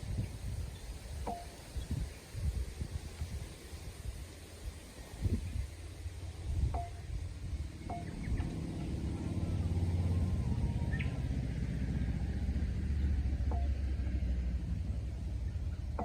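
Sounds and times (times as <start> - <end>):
vehicle engine rumble: 0.0 - 16.0.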